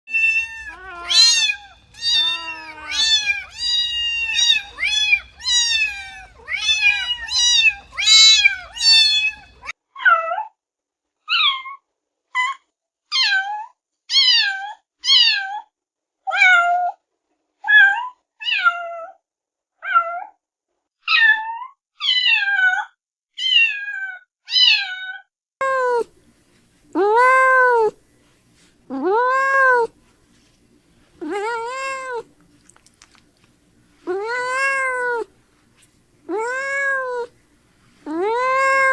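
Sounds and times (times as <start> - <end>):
kittens meowing: 0.1 - 9.7, 31.2 - 33.2, 34.0 - 35.3, 36.3 - 37.3, 38.1 - 38.9.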